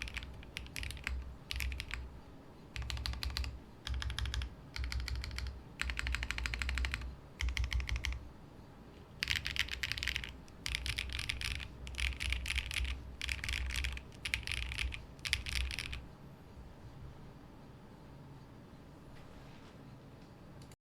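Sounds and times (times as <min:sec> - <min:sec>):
mechanical keyboard typing: 0:00.0 - 0:02.1, 0:02.8 - 0:08.2, 0:09.2 - 0:16.0.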